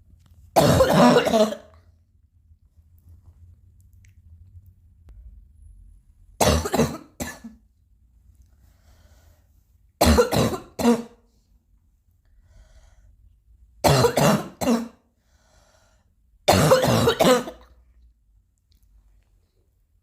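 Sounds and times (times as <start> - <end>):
person coughing: 0.6 - 1.8, 6.4 - 7.6, 10.0 - 11.2, 13.8 - 15.0, 16.5 - 17.7.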